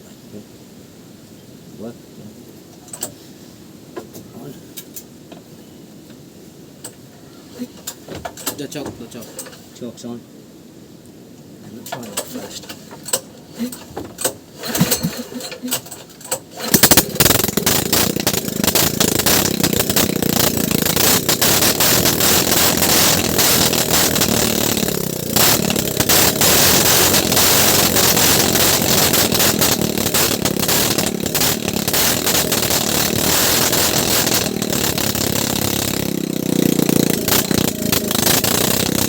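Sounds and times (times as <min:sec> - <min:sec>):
small boat engine running: 0:16.6 - 0:39.0.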